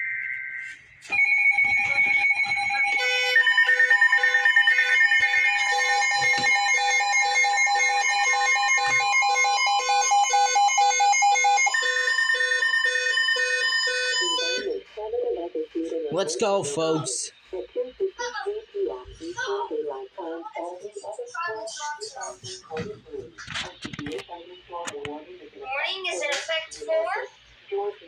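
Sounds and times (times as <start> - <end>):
overlapping emergency alert tones: 0.0 - 15.0.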